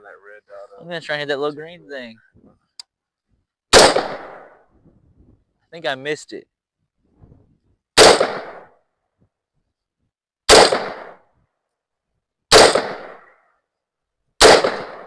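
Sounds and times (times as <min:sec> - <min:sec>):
rifle shots: 0:03.7 - 0:04.6, 0:08.0 - 0:08.8, 0:10.5 - 0:11.2, 0:12.5 - 0:13.4, 0:14.4 - 0:15.0.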